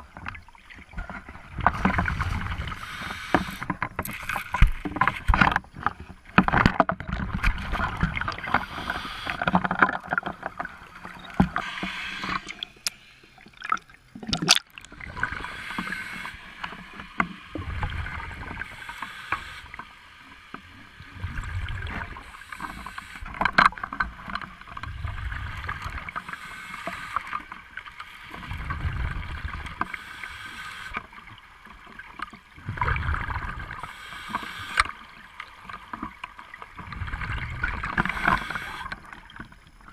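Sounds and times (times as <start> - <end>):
regulator hissing inhalations: 2.7 - 3.7, 8.4 - 9.5, 11.5 - 13.4, 15.3 - 17.0, 18.6 - 20.0, 22.2 - 23.4, 26.2 - 27.4, 29.8 - 31.0, 33.8 - 35.0, 38.0 - 39.0
bubbling exhalations: 13.5 - 15.4.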